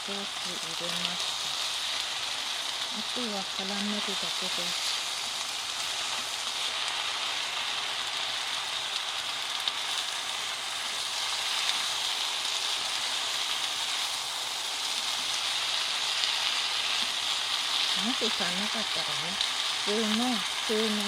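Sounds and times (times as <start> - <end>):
noodles sizzling in frying pan: 0.0 - 21.0.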